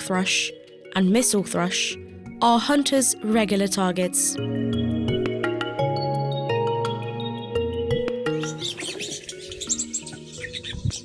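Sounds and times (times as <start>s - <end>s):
slow background music: 0.0s - 11.0s
birds chirping: 7.2s - 11.0s.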